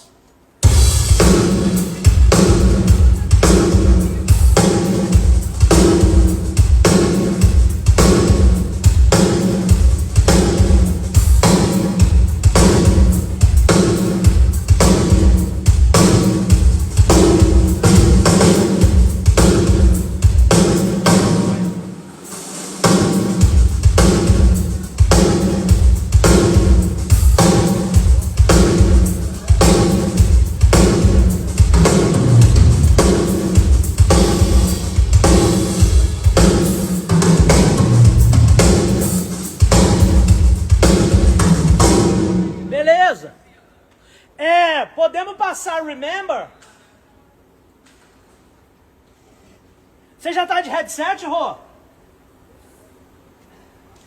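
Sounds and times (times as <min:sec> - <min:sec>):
drum kit playing a groove: 0:00.6 - 0:42.7.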